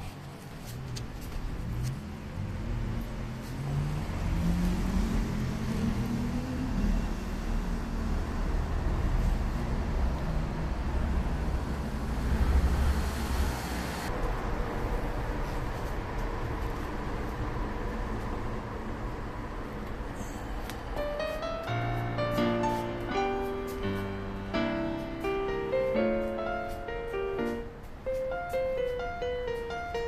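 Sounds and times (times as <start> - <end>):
traffic rumble: 0.0 - 30.0
vehicle engine rising in pitch: 1.6 - 26.2.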